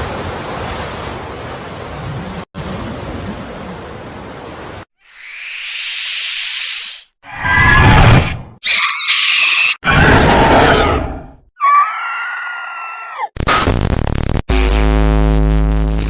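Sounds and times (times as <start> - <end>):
shrill pitch-gliding shriek: 8.6 - 9.8
long wailing scream: 11.6 - 13.3.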